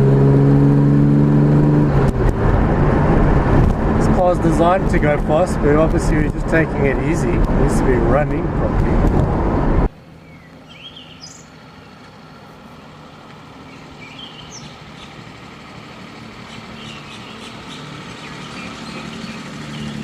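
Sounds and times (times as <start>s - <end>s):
car engine running: 0.0s - 20.0s
birds chirping: 10.0s - 20.0s.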